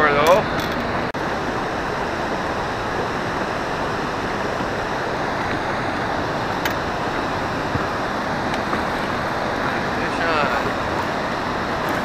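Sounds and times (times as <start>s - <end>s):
moving water: 0.0s - 12.0s.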